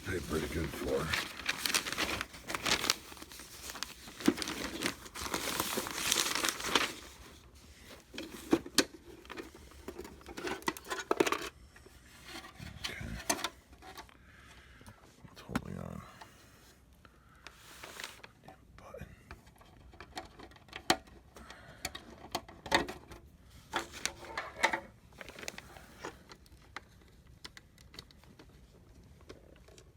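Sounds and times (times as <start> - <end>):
newspaper crinkling and rustling: 0.0 - 11.2, 17.5 - 18.3, 25.1 - 29.9.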